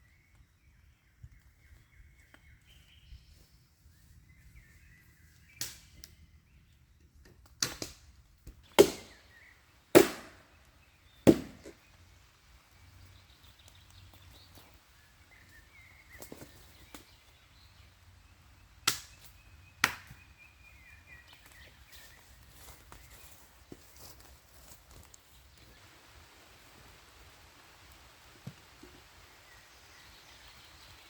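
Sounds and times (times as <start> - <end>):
sharp knocking: 11.3 - 11.7.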